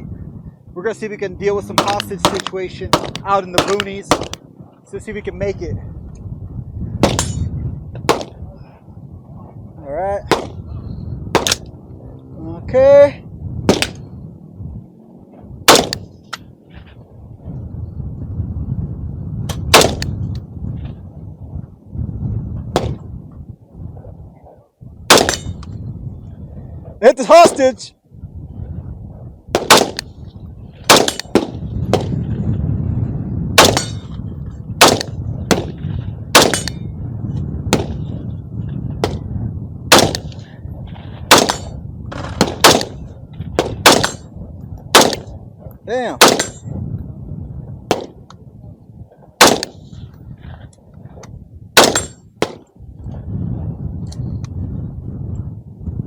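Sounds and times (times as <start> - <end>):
steady low rumble: 0.0 - 27.0, 27.9 - 56.0
rifle single shots: 1.8 - 4.4, 7.0 - 8.4, 10.3 - 10.6, 11.3 - 11.7, 13.7 - 14.1, 15.7 - 16.1, 19.5 - 20.2, 22.7 - 23.0, 25.1 - 25.6, 29.5 - 30.1, 30.9 - 32.2, 33.6 - 34.2, 34.8 - 36.8, 37.7 - 38.0, 39.9 - 40.5, 41.3 - 44.3, 44.9 - 45.4, 46.2 - 46.7, 47.9 - 48.2, 49.4 - 49.9, 51.8 - 52.7.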